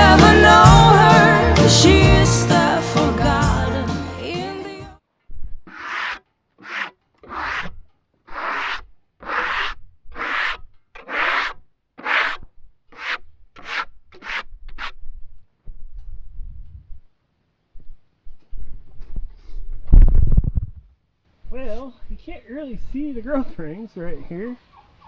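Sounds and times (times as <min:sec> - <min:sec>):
rubbing strokes on wood: 0:05.8 - 0:07.7, 0:08.3 - 0:12.4.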